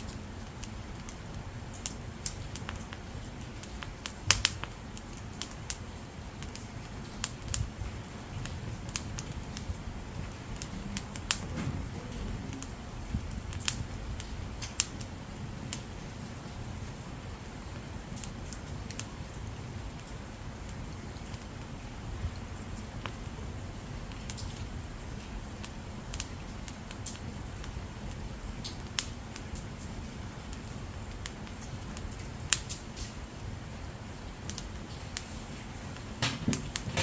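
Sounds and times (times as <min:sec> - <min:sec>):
firewood crackling and popping: 0:00.0 - 0:37.0
low steady rumble: 0:07.0 - 0:26.6.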